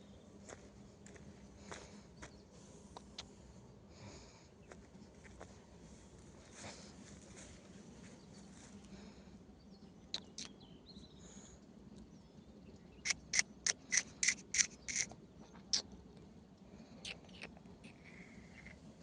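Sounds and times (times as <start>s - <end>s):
bird chirping: 9.6s - 16.0s, 17.0s - 18.8s.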